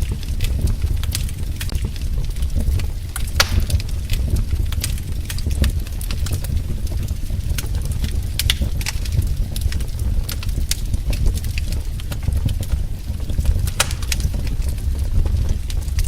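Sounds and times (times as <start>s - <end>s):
wood fire rumbling: 0.0s - 16.0s
wood fire pops and snaps: 2.7s - 6.2s, 8.4s - 9.7s, 10.3s - 16.0s.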